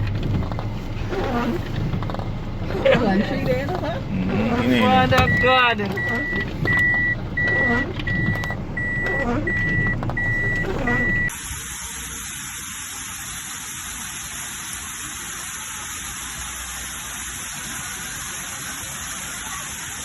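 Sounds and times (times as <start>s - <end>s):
low vehicle rumble: 0.0s - 12.4s
high electronic beep: 5.2s - 11.3s
heavy rain and wind: 9.6s - 20.0s.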